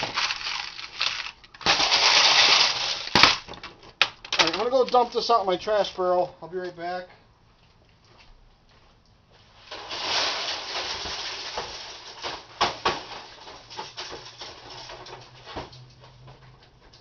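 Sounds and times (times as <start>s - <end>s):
broken glass and plastic rattling: 0.0s - 5.3s, 9.7s - 15.8s.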